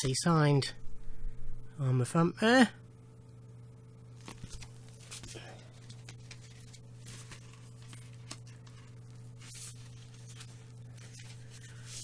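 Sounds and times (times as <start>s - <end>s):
low electrical hum: 0.0s - 12.0s
cardboard sleeve rustling: 4.1s - 12.0s.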